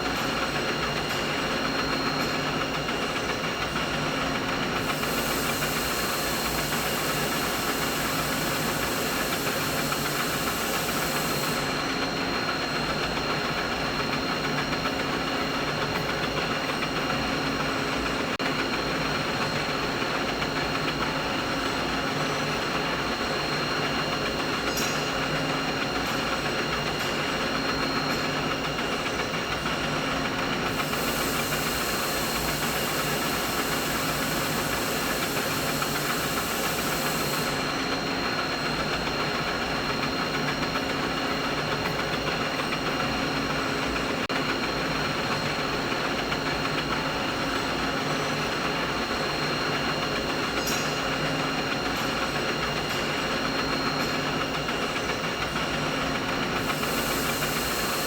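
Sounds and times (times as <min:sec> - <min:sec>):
machinery hum: 0:00.0 - 0:13.8, 0:29.3 - 0:40.7, 0:51.7 - 0:58.0
high hiss: 0:04.8 - 0:11.7, 0:30.7 - 0:37.7, 0:56.6 - 0:58.0.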